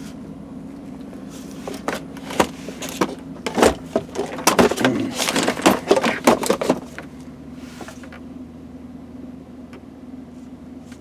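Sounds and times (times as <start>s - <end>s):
engine idling rough: 0.0s - 11.0s
hard objects clattering and clicking: 1.6s - 7.1s.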